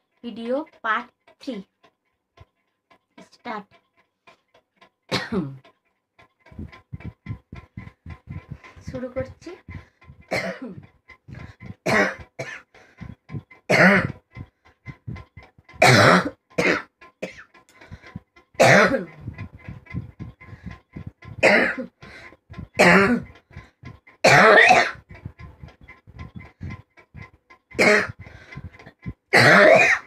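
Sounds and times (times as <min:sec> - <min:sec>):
person forced coughing: 0:05.1 - 0:05.6, 0:10.3 - 0:10.8, 0:11.8 - 0:12.6, 0:13.7 - 0:14.2, 0:15.8 - 0:17.4, 0:18.6 - 0:19.1, 0:21.4 - 0:21.9, 0:22.8 - 0:23.3, 0:24.2 - 0:25.0, 0:27.8 - 0:28.2, 0:29.3 - 0:30.0.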